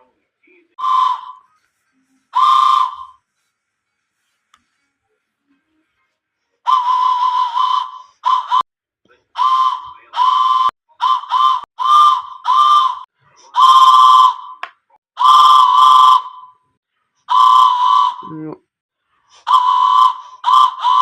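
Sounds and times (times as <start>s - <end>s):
whistle blasts: 0.8s - 1.6s, 2.3s - 3.2s, 6.7s - 8.6s, 9.4s - 16.6s, 17.3s - 18.3s, 19.4s - 21.0s.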